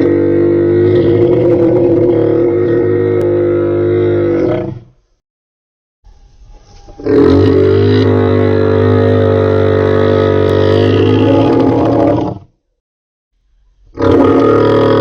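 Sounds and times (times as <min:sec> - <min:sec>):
dinosaur roar: 0:00.0 - 0:04.9, 0:07.0 - 0:12.5, 0:14.0 - 0:15.0.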